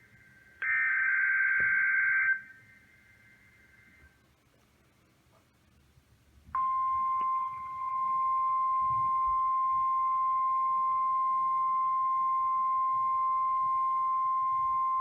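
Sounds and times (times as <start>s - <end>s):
steady electronic alarm tone: 0.6s - 2.8s.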